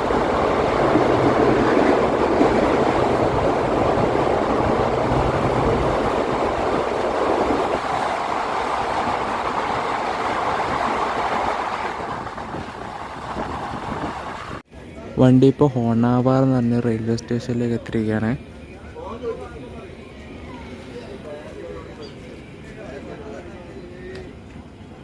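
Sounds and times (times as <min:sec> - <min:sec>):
train wheels on rails: 0:00.0 - 0:14.6.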